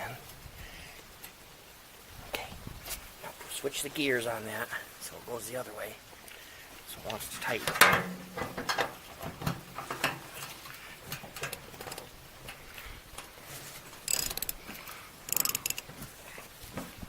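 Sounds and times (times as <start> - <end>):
ratchet wrench clicking: 14.1 - 14.6, 15.3 - 15.8.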